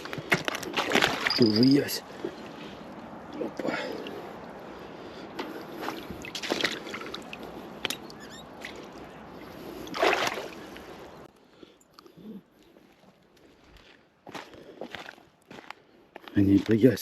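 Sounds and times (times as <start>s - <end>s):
water splashing and sloshing: 0.0s - 11.3s.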